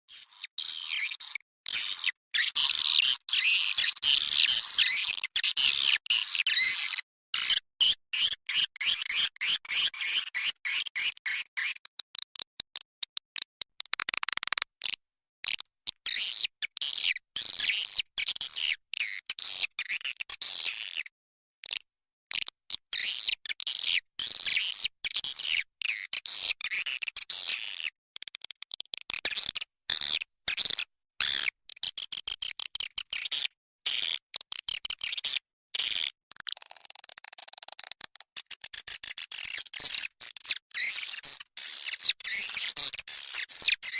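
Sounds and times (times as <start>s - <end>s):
rapid clicks: 11.8s - 14.6s.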